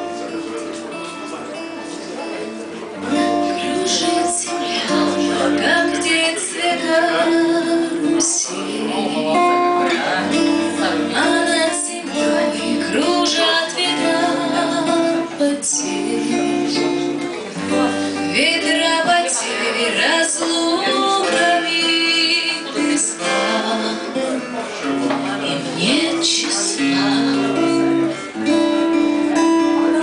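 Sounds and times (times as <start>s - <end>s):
acoustic guitar strumming: 0.0s - 30.0s
person singing: 3.0s - 30.0s.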